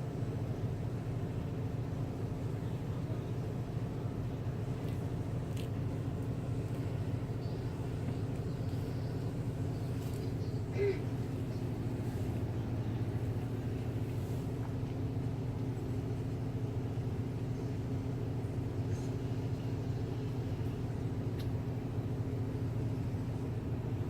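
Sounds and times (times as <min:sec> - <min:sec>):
low machine hum: 0:00.0 - 0:24.0
faint click: 0:21.3 - 0:21.6.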